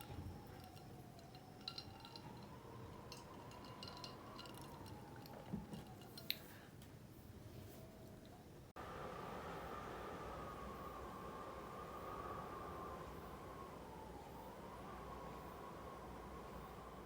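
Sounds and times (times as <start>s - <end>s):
faint clinks and taps: 0.0s - 6.6s
faint steady hum: 0.0s - 17.0s.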